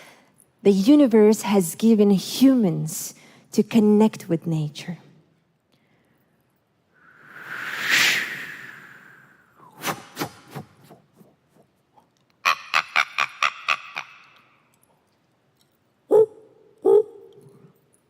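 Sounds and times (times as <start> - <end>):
person imitating barking calls: 16.1 - 17.3.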